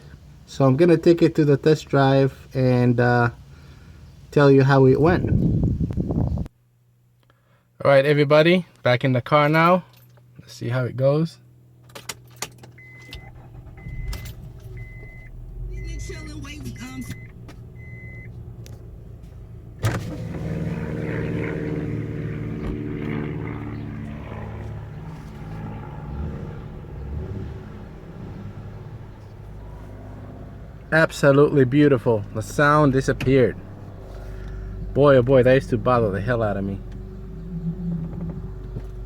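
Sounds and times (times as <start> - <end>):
road noise in car cabin: 0.0 - 6.5, 9.0 - 39.0
car engine running: 12.6 - 39.0
warning chime beeping: 12.8 - 18.3.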